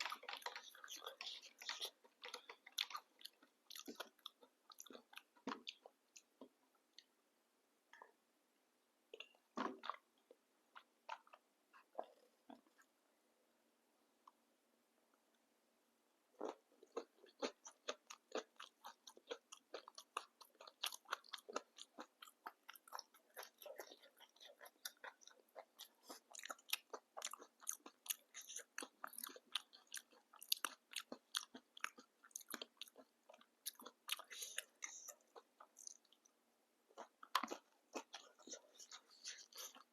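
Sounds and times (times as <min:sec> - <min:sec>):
wet chewing: 0:00.0 - 0:06.5, 0:16.4 - 0:36.3, 0:36.9 - 0:39.9
crunchy food chewing: 0:00.0 - 0:06.6, 0:16.4 - 0:39.9.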